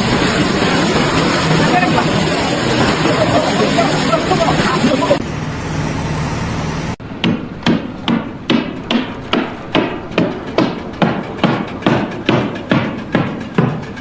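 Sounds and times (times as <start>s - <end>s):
low hum: 0.0s - 14.0s
hammer striking with ring: 7.2s - 14.0s.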